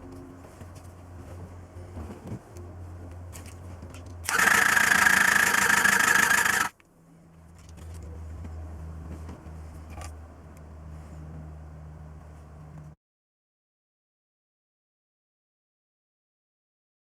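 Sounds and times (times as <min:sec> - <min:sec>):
starter motor cranking engine: 0:04.3 - 0:06.7.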